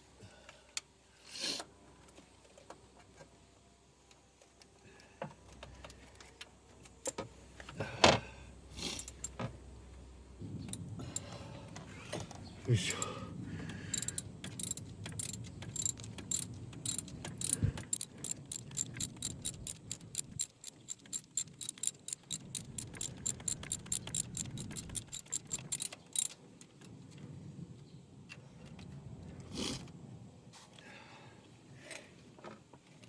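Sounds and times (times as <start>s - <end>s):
ratchet wrench clicking: 9.0s - 9.4s, 13.9s - 26.4s.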